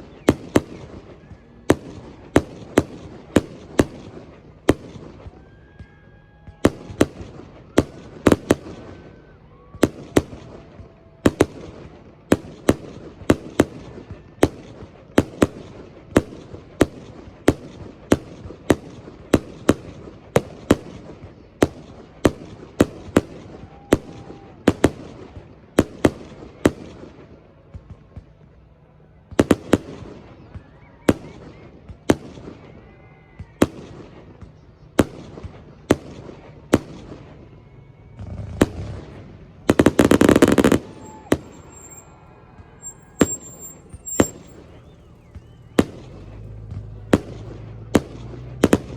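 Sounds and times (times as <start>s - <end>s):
firework shells bursting: 38.5s - 42.2s, 42.8s - 48.9s.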